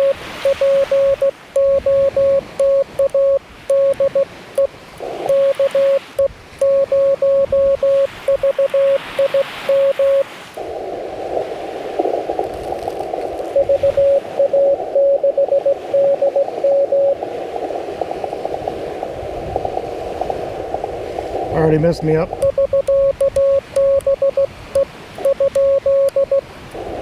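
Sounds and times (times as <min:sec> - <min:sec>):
morse code sidetone: 0:00.0 - 0:10.3, 0:13.6 - 0:17.2, 0:22.3 - 0:26.5
morse code signal: 0:00.0 - 0:10.3, 0:13.6 - 0:17.2, 0:22.3 - 0:26.5
receiver hiss: 0:00.0 - 0:27.0.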